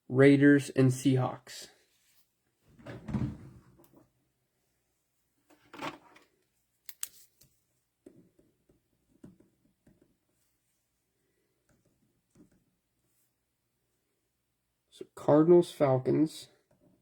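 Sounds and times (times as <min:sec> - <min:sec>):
soft rustle: 0:01.8 - 0:02.8.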